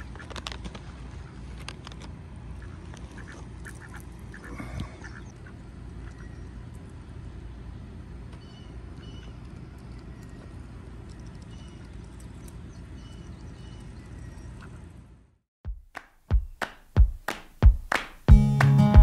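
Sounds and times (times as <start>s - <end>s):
ducks quacking: 2.5s - 6.4s.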